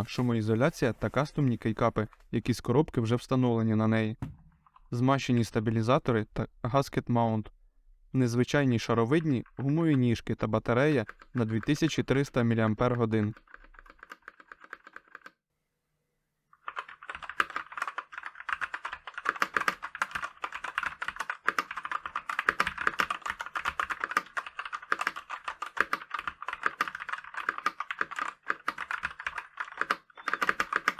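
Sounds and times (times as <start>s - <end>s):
typing on mechanical keyboard: 10.8s - 12.0s, 13.0s - 15.4s, 16.6s - 30.9s.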